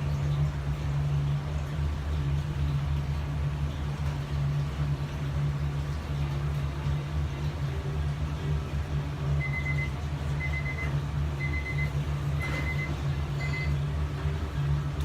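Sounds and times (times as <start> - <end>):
steady low hum: 0.0 - 15.0
electronic beeper beeps: 9.4 - 13.8.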